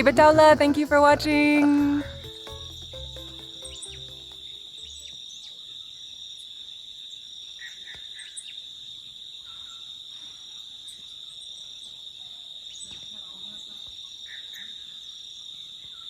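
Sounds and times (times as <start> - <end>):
music track: 0.0 - 5.2
insects droning: 0.0 - 16.0
short insect chirps: 2.0 - 16.0.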